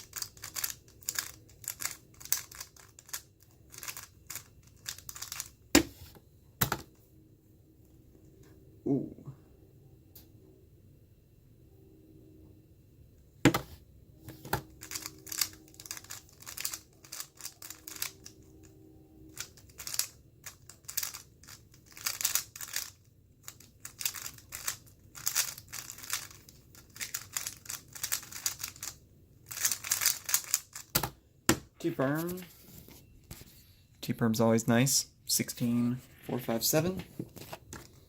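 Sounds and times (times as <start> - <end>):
puzzle cube plastic clicking: 0.0 - 5.9, 14.5 - 18.7, 19.3 - 31.1.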